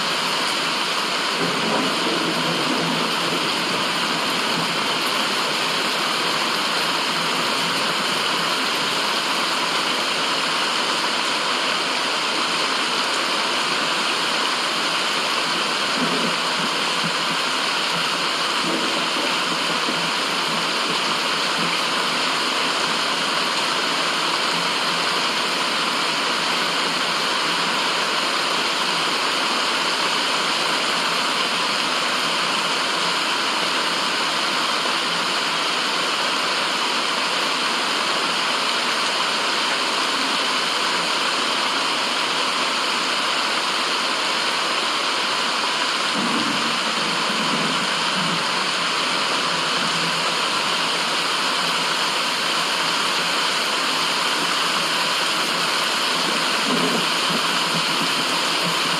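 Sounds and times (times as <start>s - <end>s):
white noise hiss: 0.0s - 58.9s.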